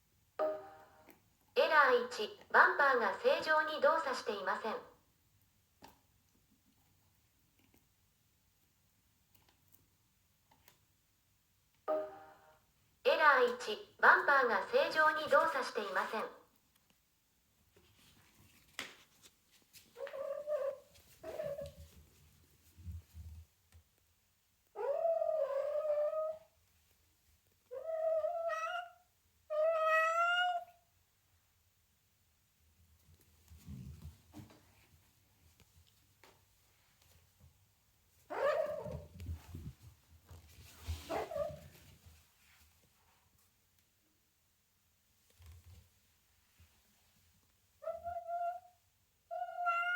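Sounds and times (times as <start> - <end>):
cat meowing: 27.7 - 30.8, 47.8 - 49.9.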